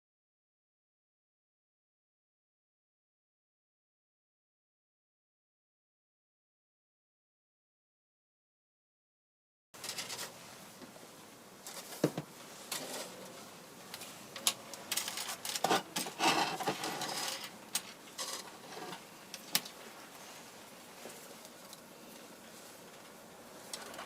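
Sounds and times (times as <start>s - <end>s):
rustling and scraping: 9.8s - 11.0s, 11.6s - 24.0s.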